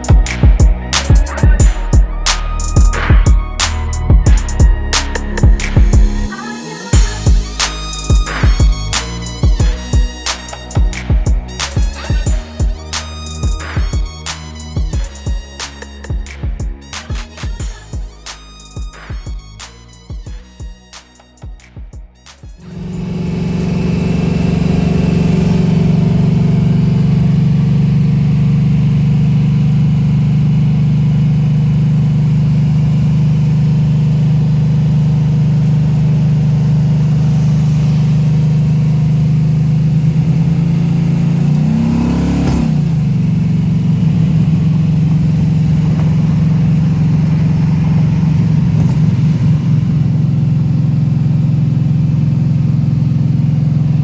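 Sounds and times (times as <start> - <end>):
car engine idling: 22.6 - 54.0
engine throttle blip: 22.6 - 54.0.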